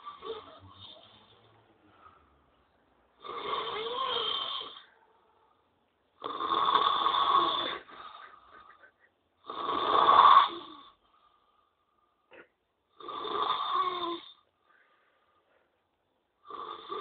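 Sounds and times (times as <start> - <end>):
man snoring: 0.0 - 1.3, 3.2 - 4.9, 6.2 - 8.2, 9.4 - 11.0, 12.9 - 14.4, 16.4 - 17.0.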